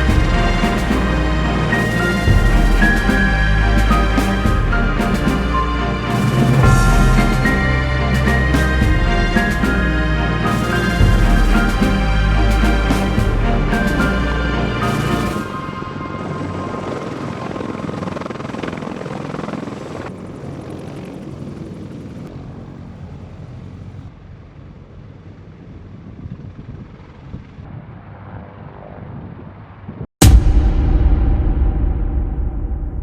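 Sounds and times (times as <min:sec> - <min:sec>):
sudden loud sound: 0:00.0 - 0:16.2, 0:30.2 - 0:33.0
helicopter rotor and engine: 0:00.0 - 0:29.0.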